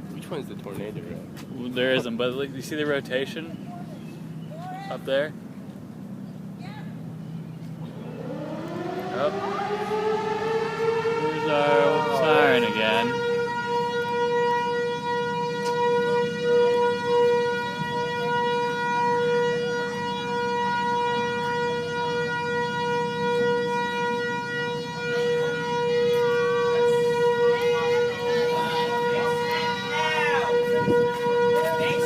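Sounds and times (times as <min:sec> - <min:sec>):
tornado warning siren: 0:07.0 - 0:32.0.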